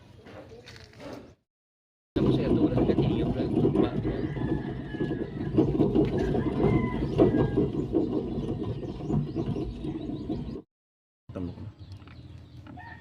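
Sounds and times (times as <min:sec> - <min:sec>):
wheel bearing humming: 0:02.2 - 0:10.6.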